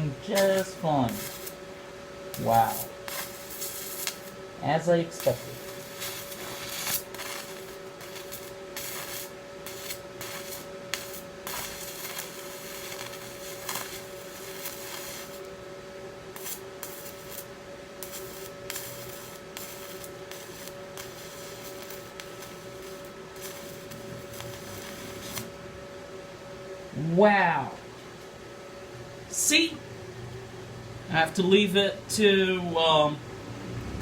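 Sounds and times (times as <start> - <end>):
welding arc crackling and hissing: 0.0 - 15.6, 16.3 - 25.6
steady hum: 0.0 - 34.0.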